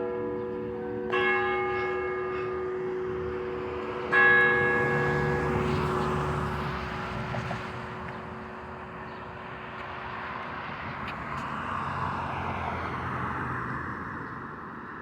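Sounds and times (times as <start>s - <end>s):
church bell hum: 0.0s - 7.0s
road traffic rumble: 0.0s - 15.0s.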